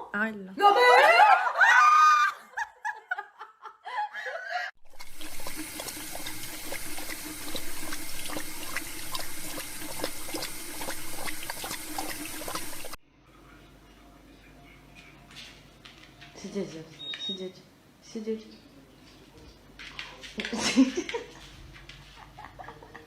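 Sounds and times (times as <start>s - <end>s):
water running with splashing: 4.8s - 13.0s.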